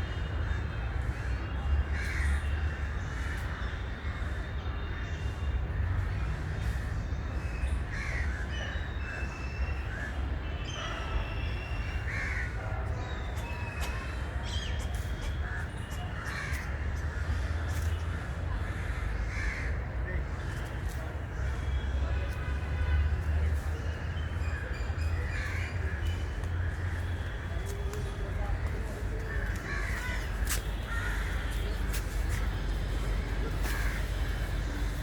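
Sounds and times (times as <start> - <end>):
crows cawing: 2.0 - 4.2, 7.9 - 8.4, 12.1 - 12.6, 18.6 - 19.8, 29.2 - 31.8, 33.3 - 34.9.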